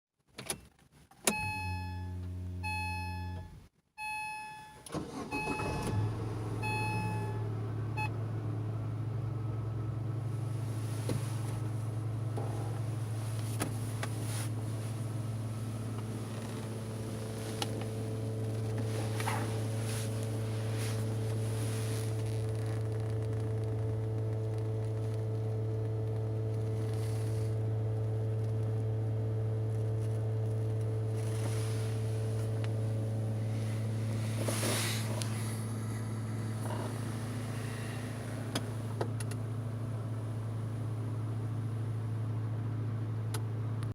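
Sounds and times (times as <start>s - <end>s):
car engine starting and idling: 1.0s - 43.9s
car warning beeps: 1.2s - 8.2s
fuel pump humming: 30.4s - 41.1s.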